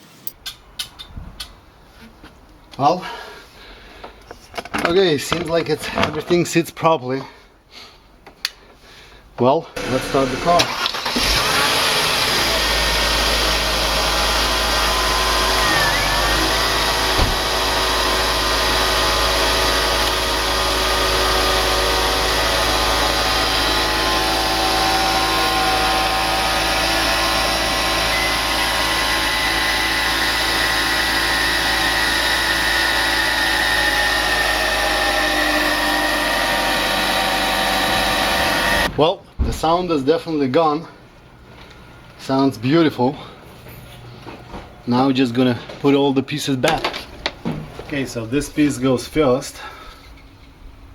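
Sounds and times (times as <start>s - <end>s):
car engine idling: 9.8s - 38.9s.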